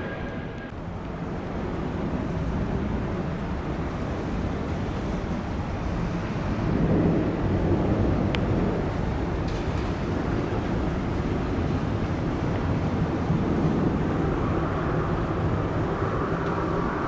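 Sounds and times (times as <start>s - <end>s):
wind on microphone: 0.0s - 0.7s
jet engines rumbling: 0.0s - 1.1s.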